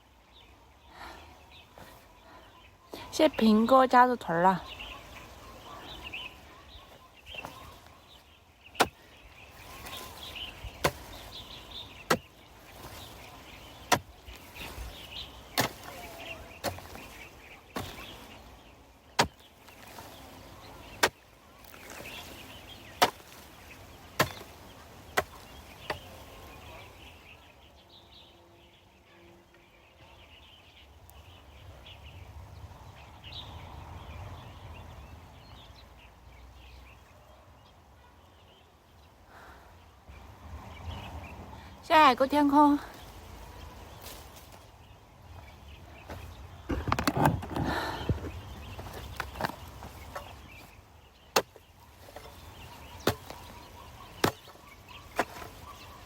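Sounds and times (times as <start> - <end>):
hand hoe chopping into soil: 6.4 - 8.0, 8.7 - 26.8, 43.9 - 44.6, 46.0 - 50.7, 51.3 - 56.0.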